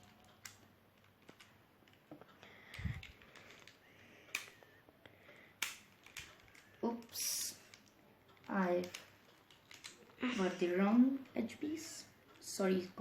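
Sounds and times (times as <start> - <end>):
plastic cube pieces clicking: 0.0 - 4.6, 5.6 - 10.2.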